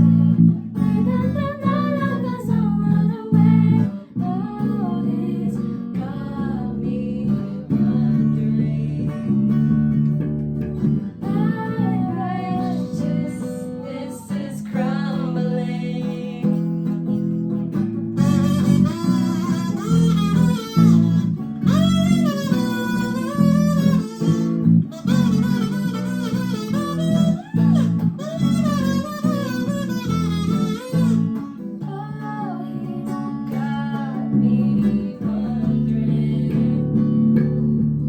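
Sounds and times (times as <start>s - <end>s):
person singing: 0.0s - 9.8s, 11.1s - 16.9s, 18.2s - 37.4s
strummed guitar: 0.0s - 38.0s.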